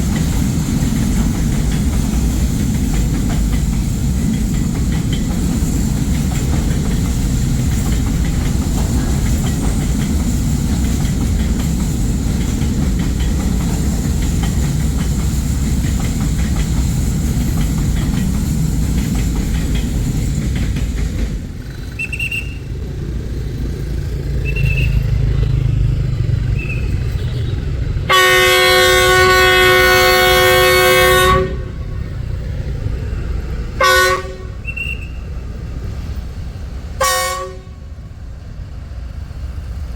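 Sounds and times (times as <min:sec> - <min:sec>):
freight train rumbling by: 0:00.0 - 0:39.9
locomotive engine droning: 0:00.0 - 0:39.9
locomotive horn blast: 0:26.6 - 0:32.0, 0:33.8 - 0:35.2, 0:37.0 - 0:38.0.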